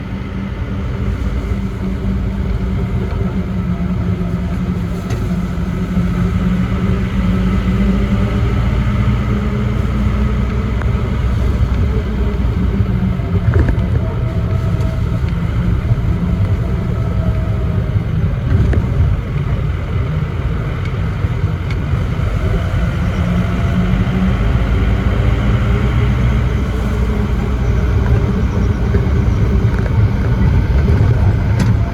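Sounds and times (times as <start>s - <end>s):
road rumble: 0.0s - 31.9s
vehicle engine hum: 0.0s - 31.9s.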